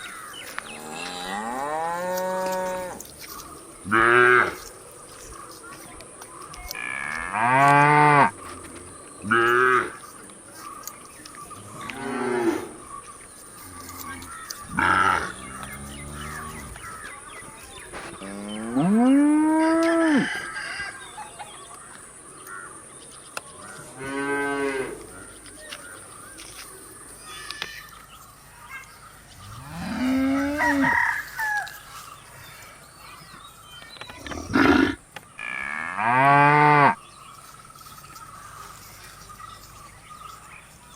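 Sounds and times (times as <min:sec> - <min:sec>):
cattle mooing: 0:34.2 - 0:37.0.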